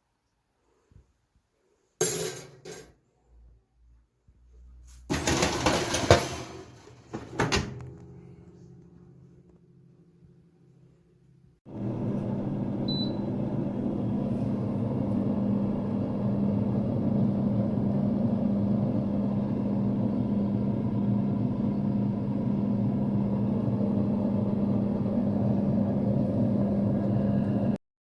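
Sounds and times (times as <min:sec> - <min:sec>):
air fryer fan hum: 0:05.1 - 0:10.0, 0:11.7 - 0:27.8.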